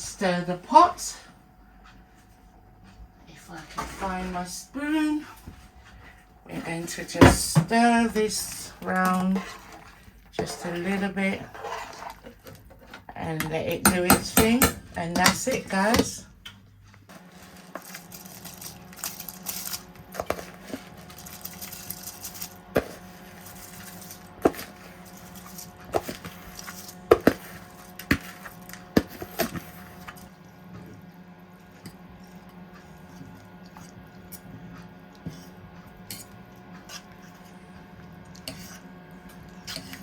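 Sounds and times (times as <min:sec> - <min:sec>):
steady low hum: 0:00.0 - 0:40.0.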